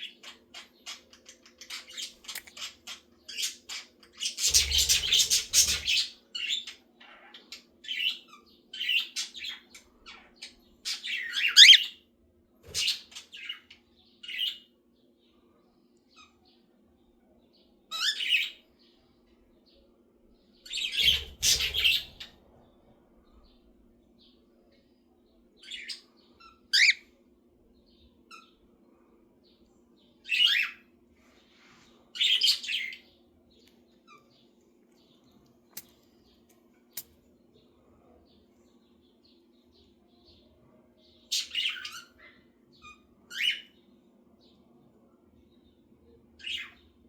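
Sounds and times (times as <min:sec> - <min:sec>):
parrot chirps and squawks: 0:03.7 - 0:12.0, 0:25.7 - 0:27.0.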